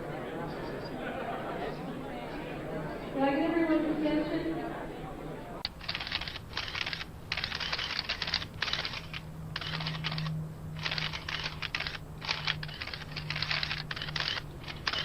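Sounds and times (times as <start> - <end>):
steady low hum: 0.0 - 15.0
typing on a keyboard: 5.9 - 15.0.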